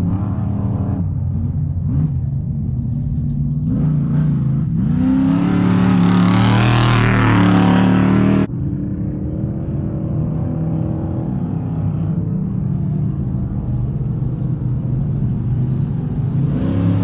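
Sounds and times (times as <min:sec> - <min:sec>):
race vehicle engine revving: 0:03.4 - 0:08.5.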